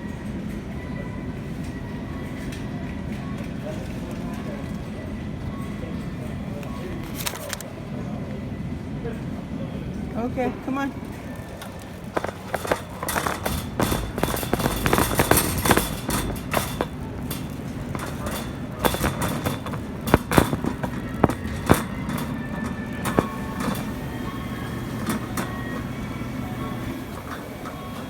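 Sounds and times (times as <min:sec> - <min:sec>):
steady low background hum: 0:07.7 - 0:28.0
clicks and clattering knocks: 0:11.9 - 0:27.9.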